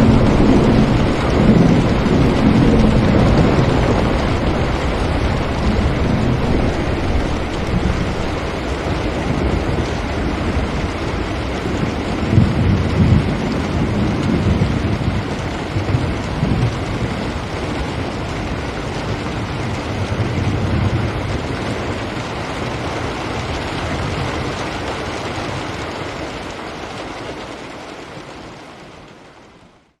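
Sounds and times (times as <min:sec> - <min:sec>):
low rumbles: 0:00.0 - 0:22.7
rain falling on a window: 0:00.0 - 0:30.0.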